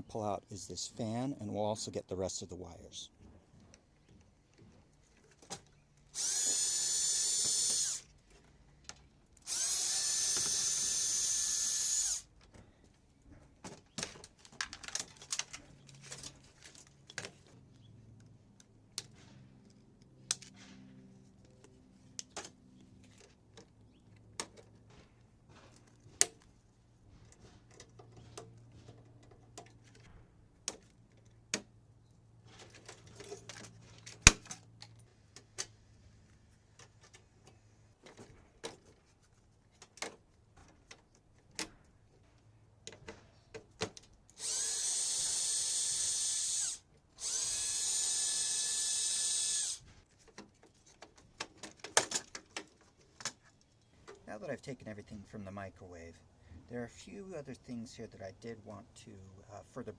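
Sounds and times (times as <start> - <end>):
power drill whining: 6.1 - 8.1, 9.4 - 12.3, 44.4 - 49.9.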